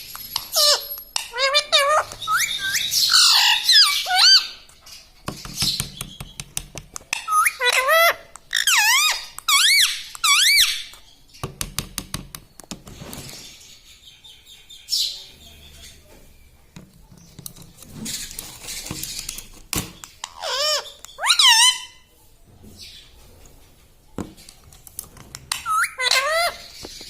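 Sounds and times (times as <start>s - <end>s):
parrot squeaky calls: 0.3s - 4.8s, 7.2s - 11.1s, 20.2s - 22.1s, 25.5s - 27.0s.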